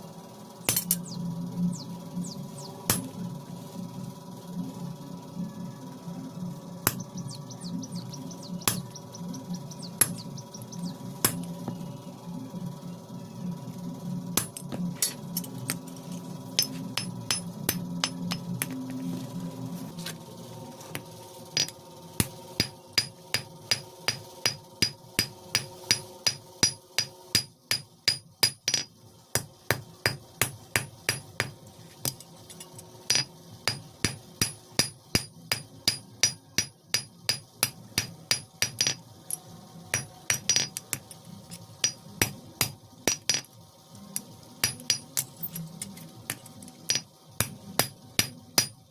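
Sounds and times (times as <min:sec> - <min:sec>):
low steady hum: 0:00.0 - 0:48.9
hammer striking iron on anvil: 0:00.7 - 0:01.2, 0:02.9 - 0:03.2, 0:06.8 - 0:09.0, 0:09.8 - 0:11.5, 0:14.4 - 0:15.8, 0:16.6 - 0:18.8, 0:21.6 - 0:43.5, 0:44.6 - 0:48.8.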